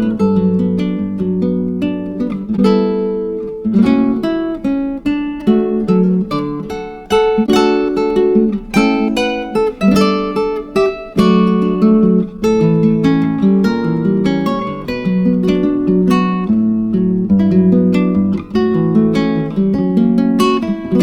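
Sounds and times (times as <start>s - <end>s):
acoustic guitar playing: 0.0s - 21.0s.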